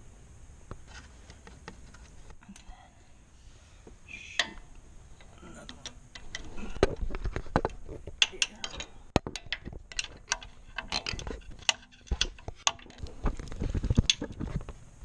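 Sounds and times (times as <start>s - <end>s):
ratcheting wrench clicking: 5.2s - 7.0s, 8.2s - 13.0s.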